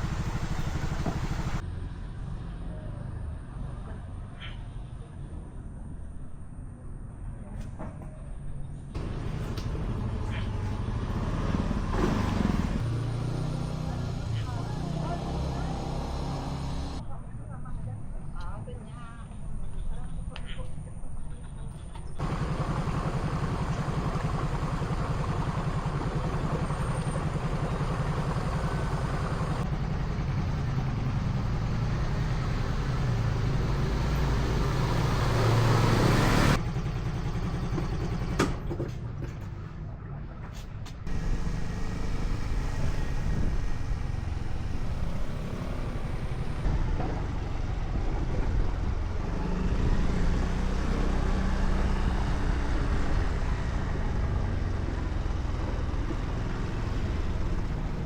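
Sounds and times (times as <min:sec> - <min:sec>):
vehicle engines passing: 0:00.0 - 0:07.5, 0:08.4 - 0:18.7, 0:21.6 - 0:58.0
low traffic rumble: 0:00.0 - 0:58.0.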